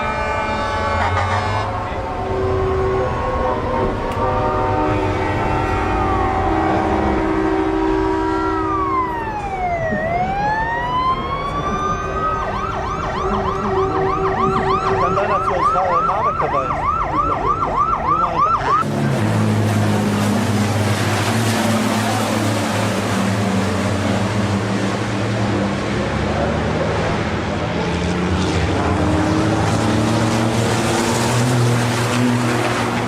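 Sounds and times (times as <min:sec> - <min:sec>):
electronic siren wailing and yelping: 0:08.2 - 0:18.8.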